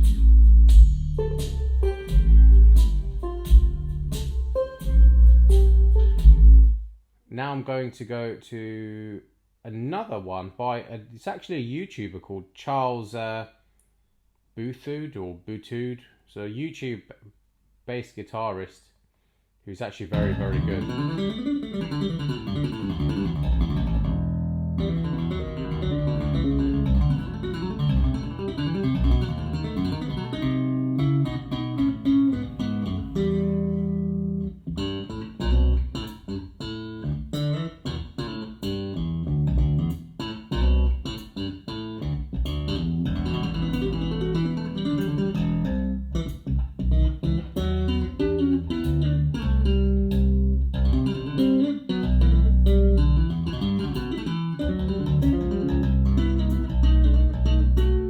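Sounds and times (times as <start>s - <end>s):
electric bass guitar over speakers: 0.0s - 6.9s, 20.2s - 58.0s.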